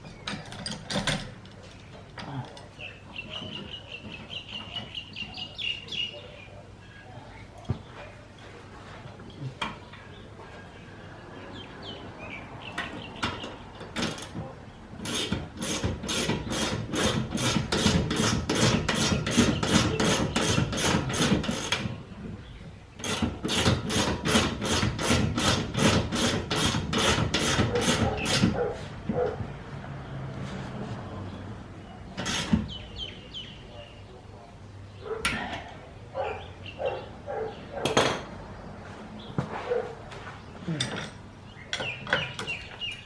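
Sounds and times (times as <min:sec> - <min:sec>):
hand ratchet rasping strokes: 0:15.0 - 0:21.9, 0:23.0 - 0:28.6, 0:32.2 - 0:32.7.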